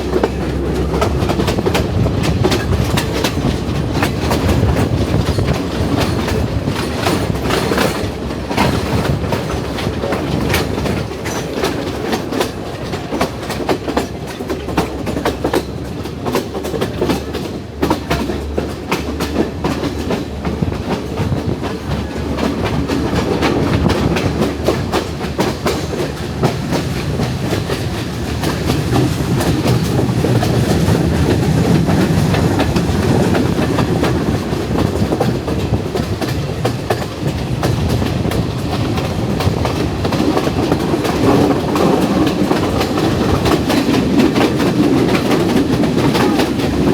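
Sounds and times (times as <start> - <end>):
train rumble: 0.0 - 46.9
train wheels clacking on track: 0.0 - 46.9.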